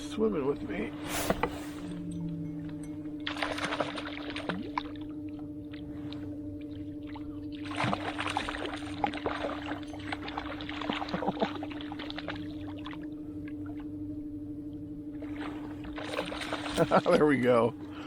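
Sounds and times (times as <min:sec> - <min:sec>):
boat motor humming: 0:00.0 - 0:18.0
fish splashing in water: 0:03.2 - 0:05.0, 0:07.0 - 0:13.0.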